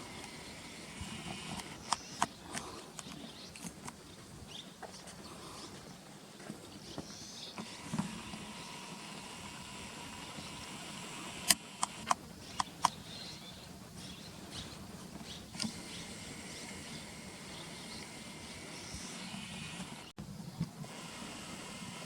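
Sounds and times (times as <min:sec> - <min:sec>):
sharp clicks: 0:00.2 - 0:04.0, 0:10.3 - 0:13.0, 0:15.2 - 0:16.0.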